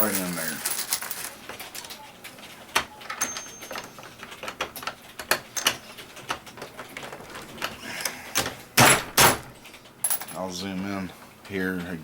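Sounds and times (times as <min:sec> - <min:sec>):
reloading press clicking and clinking: 0:00.0 - 0:01.9.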